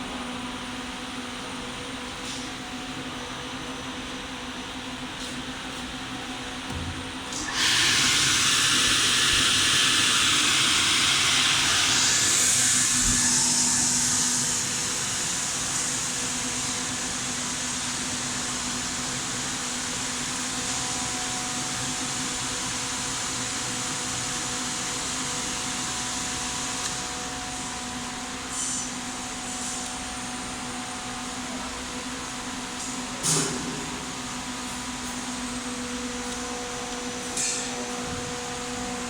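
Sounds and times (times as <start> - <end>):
blower fan hum: 0.0 - 28.4
air blowing through nozzles: 7.3 - 17.3.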